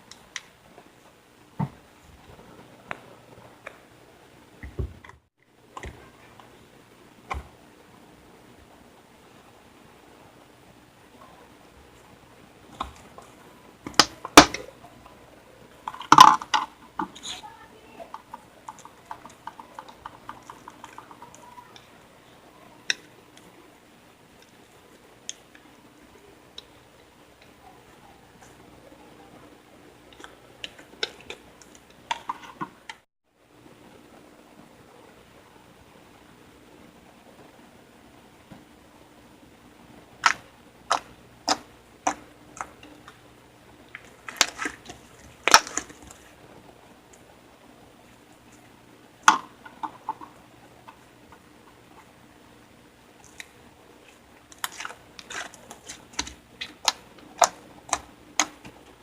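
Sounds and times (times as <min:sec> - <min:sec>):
sharp slime pops: 0:45.4 - 0:46.0.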